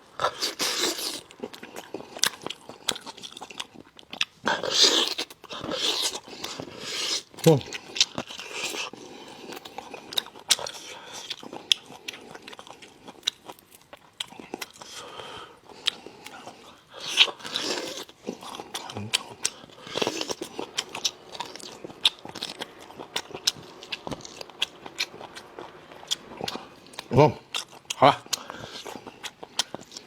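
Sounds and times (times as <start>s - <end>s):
close-miked chewing and mouth clicks: 0.1s - 30.0s.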